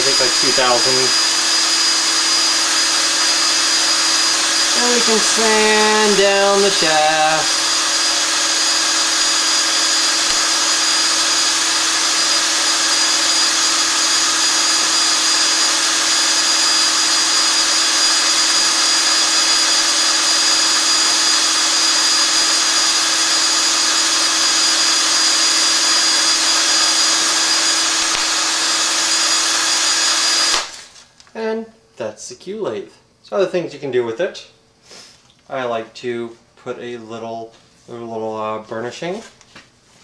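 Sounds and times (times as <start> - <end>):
sandpaper on spinning shaft: 0.0 - 30.6
electric drill whining: 0.0 - 31.1.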